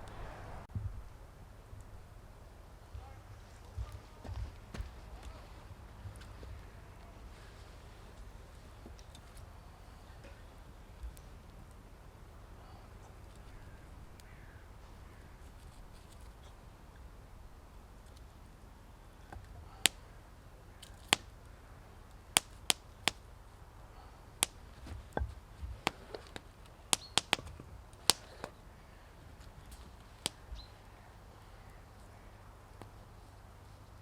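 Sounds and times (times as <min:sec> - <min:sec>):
dry wood cracking and snapping: 0:17.9 - 0:23.3, 0:24.4 - 0:32.2.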